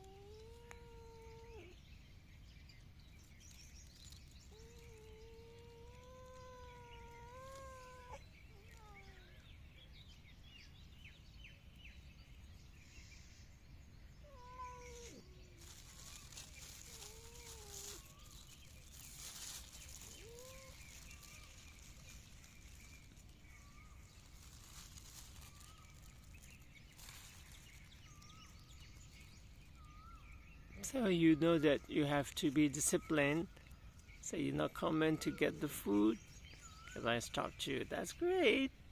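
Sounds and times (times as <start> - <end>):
cat meowing: 0.0 - 1.7, 4.5 - 9.4, 14.2 - 18.1, 20.1 - 21.0.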